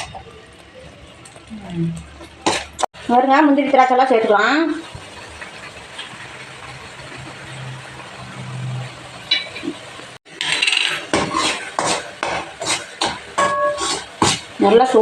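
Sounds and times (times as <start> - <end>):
metal spoon scraping a pan: 9.3 - 14.5.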